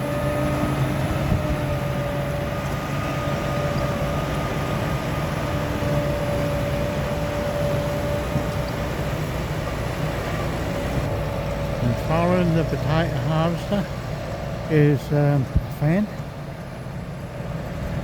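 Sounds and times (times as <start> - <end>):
harvester engine drone: 0.0 - 18.0
machinery whine: 0.0 - 18.0.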